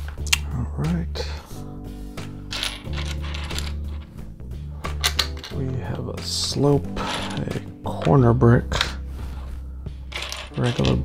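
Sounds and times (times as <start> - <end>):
plastic bricks clicking and rattling: 2.6 - 3.8, 10.1 - 11.0.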